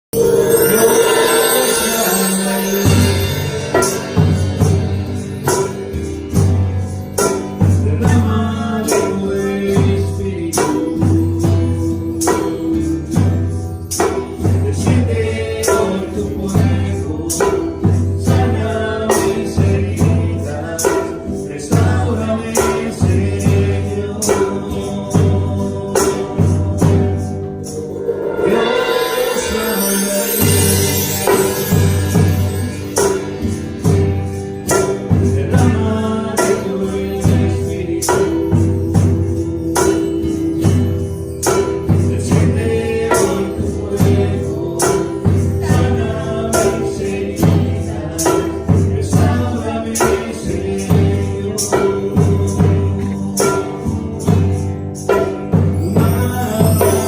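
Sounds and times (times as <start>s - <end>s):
tambourine strokes: 0.0s - 57.0s
band playing praise music: 0.1s - 57.0s
person singing: 0.2s - 4.8s, 7.6s - 13.4s, 14.2s - 33.5s, 34.7s - 55.2s, 55.8s - 57.0s
bass and keyboard tones: 23.3s - 48.1s.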